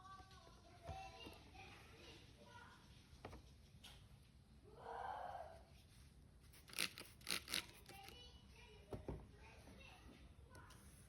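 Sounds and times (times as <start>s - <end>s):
knife scraping on a sharpener: 6.6s - 8.0s.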